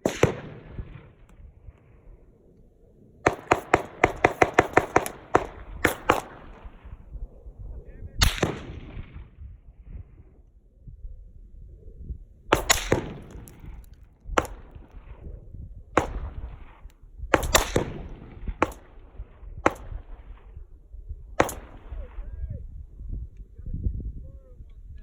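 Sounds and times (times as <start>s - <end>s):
gunshots with rolling echo: 0.0s - 1.7s, 3.1s - 7.4s, 8.1s - 9.9s, 12.4s - 22.4s.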